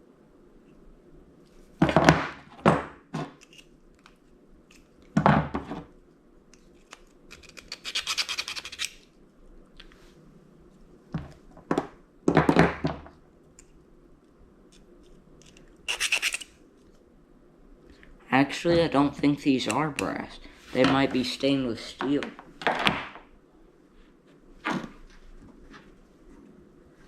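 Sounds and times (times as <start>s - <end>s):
rapid rasping sound: 7.3s - 9.0s, 15.9s - 16.5s
metal parts clunking and scraping: 15.4s - 16.5s.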